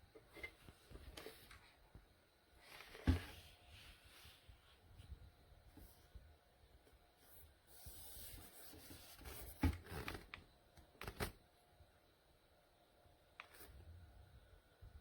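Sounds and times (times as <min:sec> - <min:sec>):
handling rustling and rubbing: 0:02.6 - 0:06.3, 0:07.2 - 0:11.3.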